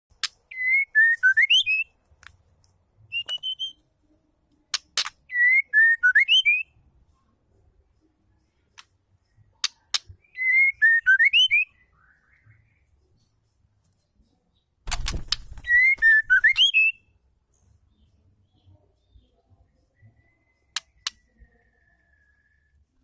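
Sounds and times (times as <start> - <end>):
bird whistled calls: 0.5 - 1.9, 3.1 - 3.8, 10.2 - 12.5, 15.6 - 17.0.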